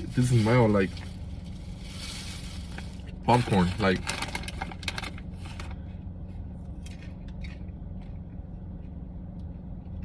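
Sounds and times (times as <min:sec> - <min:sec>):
popcorn bag rustling: 0:00.0 - 0:05.7.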